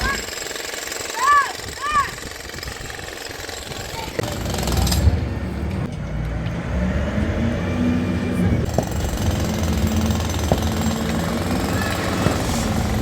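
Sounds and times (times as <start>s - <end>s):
engine rumbling: 3.8s - 13.0s.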